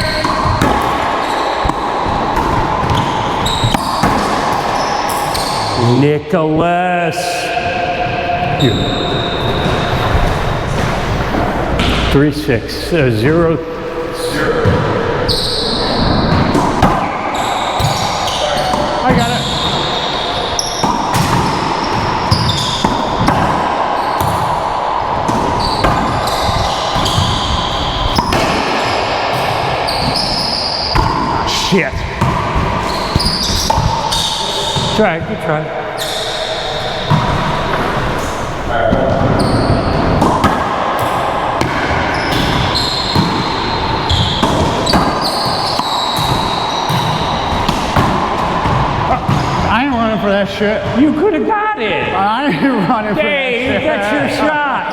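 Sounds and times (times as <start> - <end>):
shoes squeaking on court: 0.0 - 5.8, 14.6 - 35.2, 35.8 - 50.0
racquetball hits echoing: 0.0 - 6.0, 7.3 - 12.3, 13.2 - 52.2.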